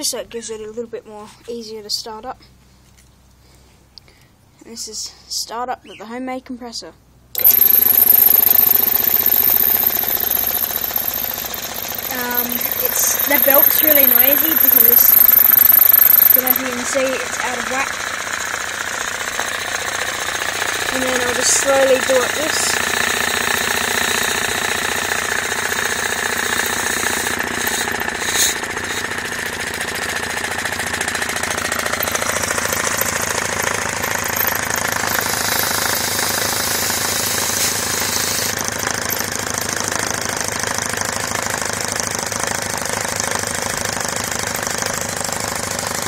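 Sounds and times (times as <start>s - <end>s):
air compressor hammering chatter: 7.4s - 41.6s.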